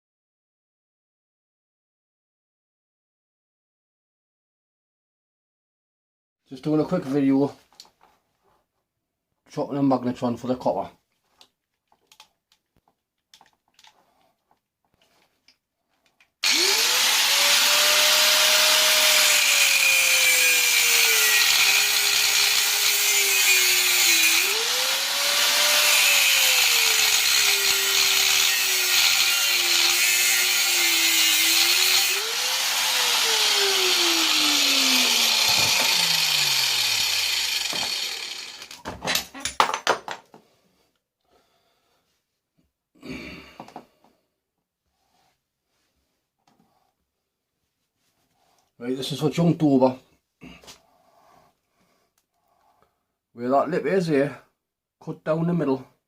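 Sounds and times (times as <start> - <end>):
angle grinder cutting metal: 16.4 - 38.8.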